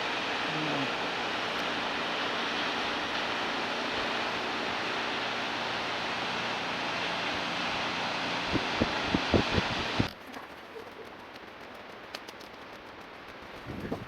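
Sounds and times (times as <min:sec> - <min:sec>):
waterfall rushing: 0:00.0 - 0:10.1.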